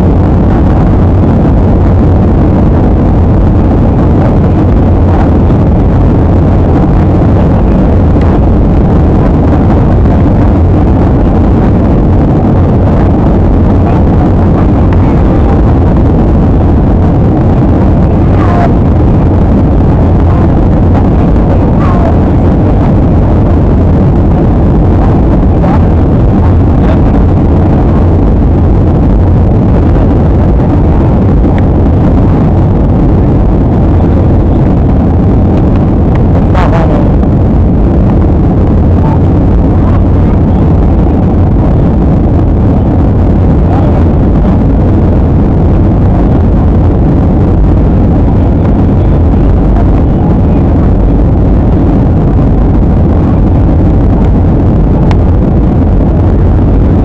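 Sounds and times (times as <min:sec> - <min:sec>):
jet airliner cabin roar: 0:00.0 - 0:57.0
faint voices: 0:17.6 - 0:23.4, 0:35.8 - 0:37.2.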